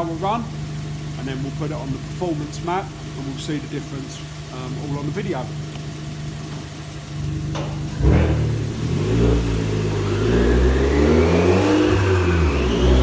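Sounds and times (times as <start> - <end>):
car engine pulling up through revs: 0.0 - 13.0
rising whine: 7.1 - 13.0.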